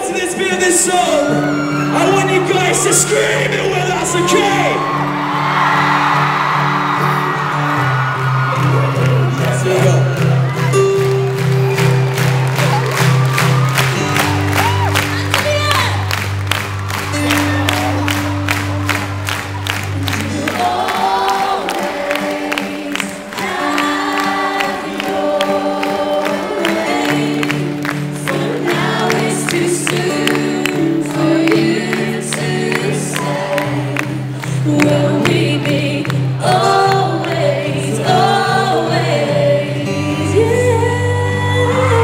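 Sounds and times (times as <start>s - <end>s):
live pop-rock band playing: 0.0s - 42.0s
crowd singing along: 19.8s - 42.0s.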